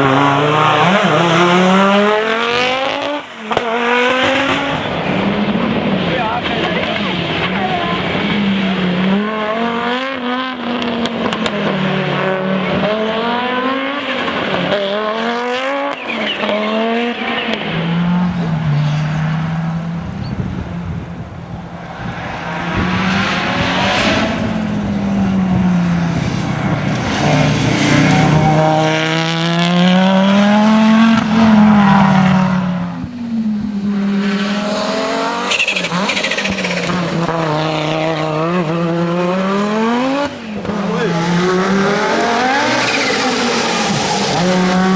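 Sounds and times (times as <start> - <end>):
rally car engine revving: 0.0 - 44.9.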